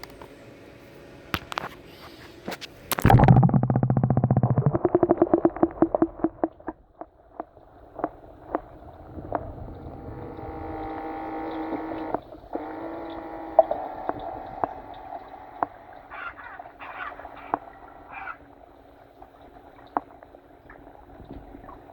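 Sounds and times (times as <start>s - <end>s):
sharp clicks and knocks: 2.5s - 8.7s
small electric motors humming: 9.8s - 16.1s.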